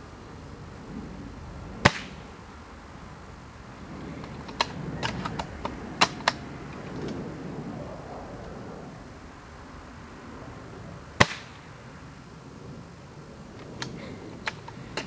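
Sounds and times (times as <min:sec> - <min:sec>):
airsoft rifle shot: 0:01.8 - 0:02.3, 0:11.2 - 0:11.6.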